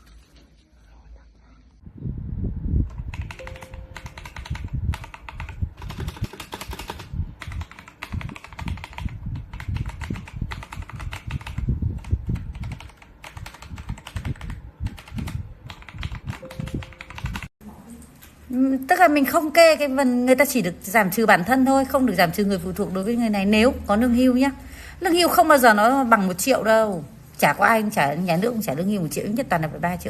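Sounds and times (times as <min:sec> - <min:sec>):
fast typing on mechanical keyboard: 0:02.9 - 0:17.5.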